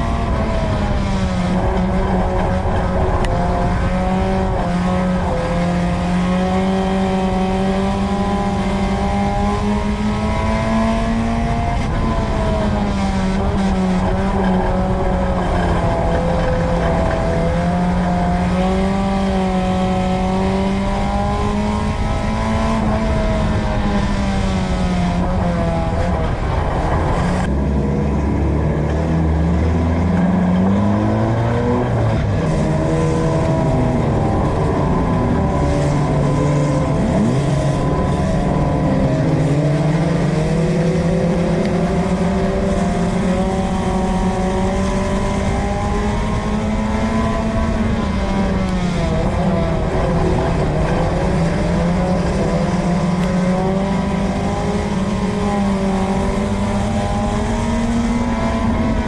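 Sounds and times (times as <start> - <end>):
race car engine revving: 0.0 - 59.0.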